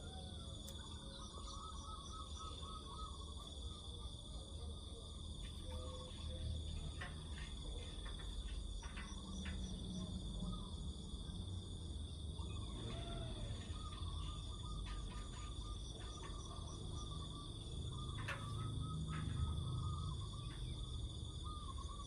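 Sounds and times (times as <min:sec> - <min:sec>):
crickets trilling: 0:00.0 - 0:22.0
faint clicks and chirps: 0:00.4 - 0:03.8, 0:05.1 - 0:11.3, 0:12.7 - 0:22.0.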